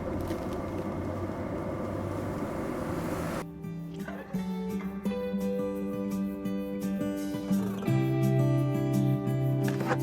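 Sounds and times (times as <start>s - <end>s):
acoustic guitar music: 3.6s - 10.0s.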